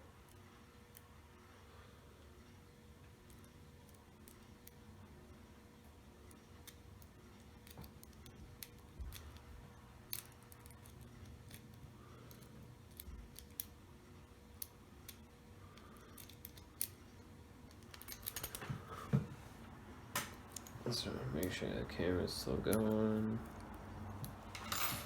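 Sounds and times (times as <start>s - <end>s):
lock pick metallic clicks: 17.7s - 18.6s.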